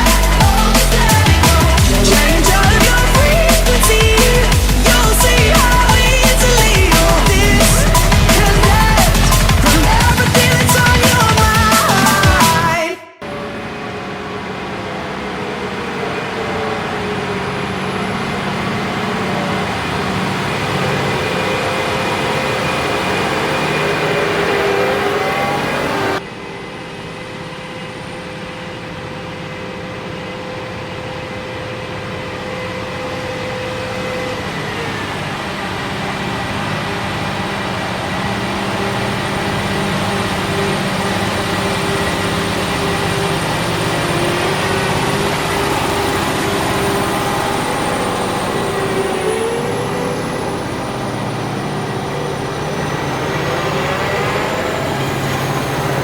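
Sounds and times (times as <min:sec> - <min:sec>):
heavy machinery running: 0:00.0 - 0:56.0
thin mechanical whine: 0:13.2 - 0:56.0.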